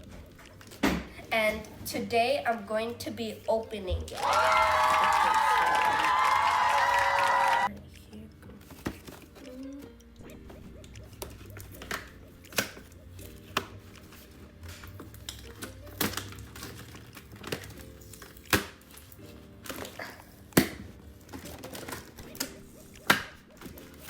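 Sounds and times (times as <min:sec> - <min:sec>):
background music with low tones: 0:00.0 - 0:24.0
plastic packaging crinkling: 0:15.2 - 0:20.2.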